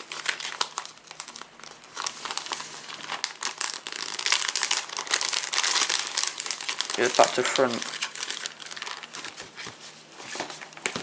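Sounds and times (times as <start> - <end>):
plastic and card crinkling: 0.0 - 11.0.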